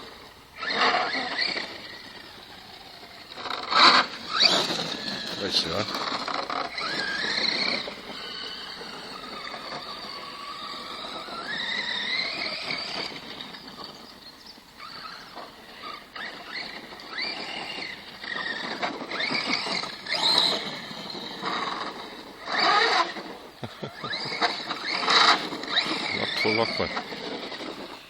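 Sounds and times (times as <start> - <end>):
toy car motor whining: 0.0 - 28.0.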